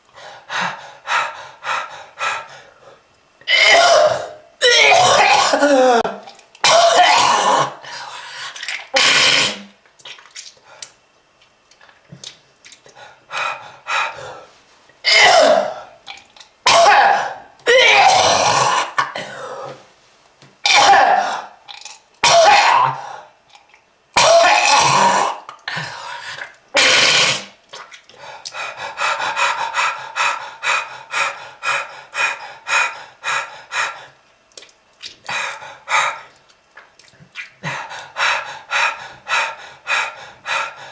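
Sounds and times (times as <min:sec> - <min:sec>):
person coughing: 0:03.5 - 0:07.8, 0:15.1 - 0:15.8, 0:16.7 - 0:19.5.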